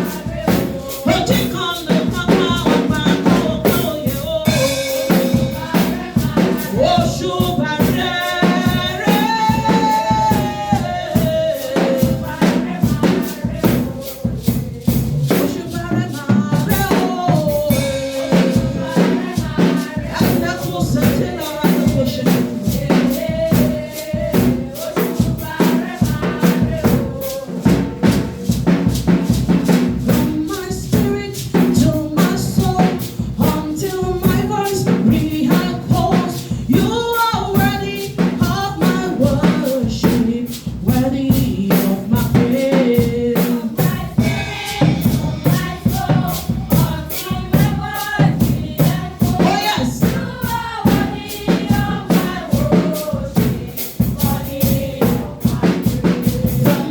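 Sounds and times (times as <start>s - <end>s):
drum and tambourine beat: 0.0s - 56.9s
voices singing gospel: 0.0s - 56.9s.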